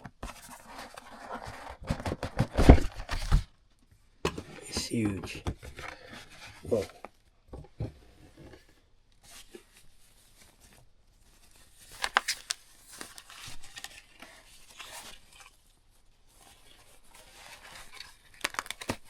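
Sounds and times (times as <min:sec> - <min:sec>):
packaging crinkling: 0:11.4 - 0:15.6, 0:16.3 - 0:19.0.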